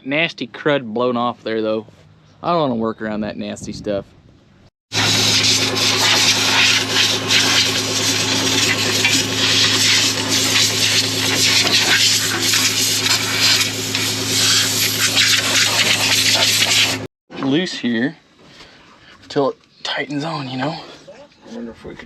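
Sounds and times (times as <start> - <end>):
loud rush of blowing air: 4.9 - 17.1
steady low hum: 4.9 - 17.1.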